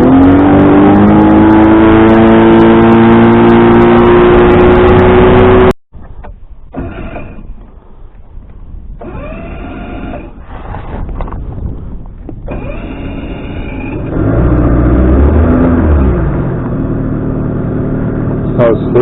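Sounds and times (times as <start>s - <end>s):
outboard motor running: 1.3s - 19.0s.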